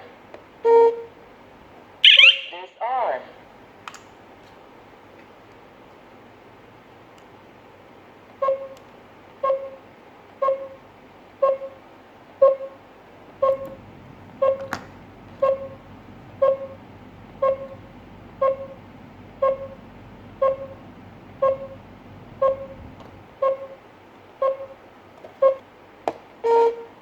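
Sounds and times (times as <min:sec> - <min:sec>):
alarm panel beeping: 0:02.0 - 0:02.6, 0:10.4 - 0:10.8, 0:13.4 - 0:23.8.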